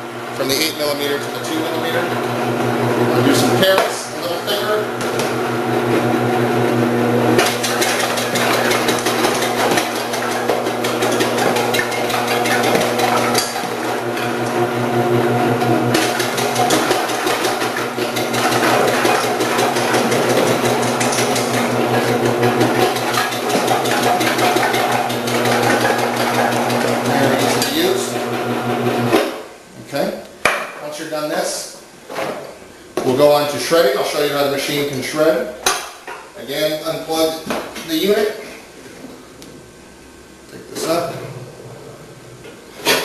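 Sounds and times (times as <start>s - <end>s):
slicer electric motor running: 7.3s - 28.9s.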